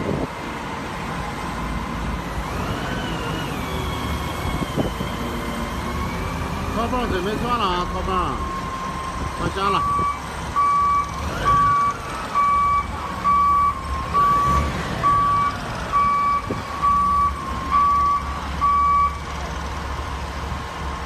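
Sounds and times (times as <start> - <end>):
engine rumbling: 0.0 - 21.0
vehicle reversing alarm beeping: 3.1 - 19.4.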